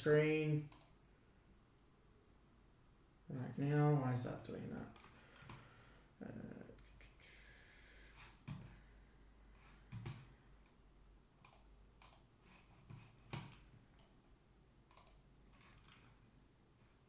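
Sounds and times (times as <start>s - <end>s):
computer mouse clicks: 0.7s - 1.0s, 11.4s - 14.2s, 14.9s - 16.2s.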